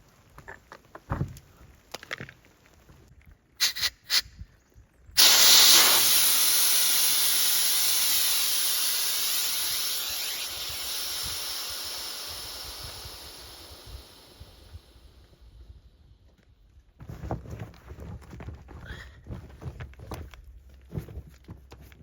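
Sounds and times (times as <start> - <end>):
air rushing through valve: 3.6 - 4.3, 5.2 - 15.7.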